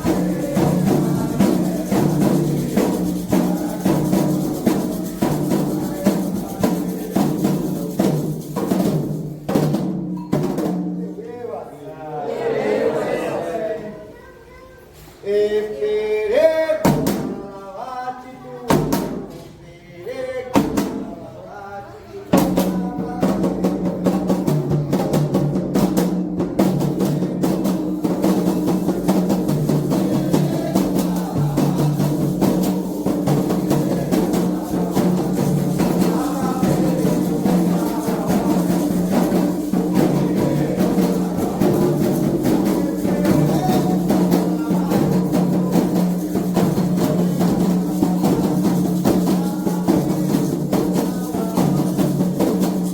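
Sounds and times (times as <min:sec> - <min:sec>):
hand drums playing rhythm: 0:00.0 - 0:11.2, 0:22.3 - 0:52.9.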